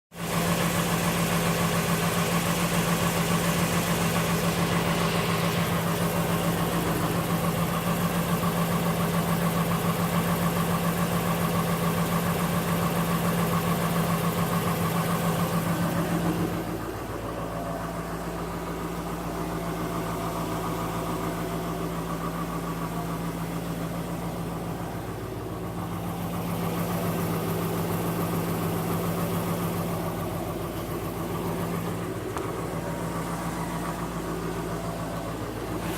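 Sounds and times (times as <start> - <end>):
machine humming: 4.2 - 8.4.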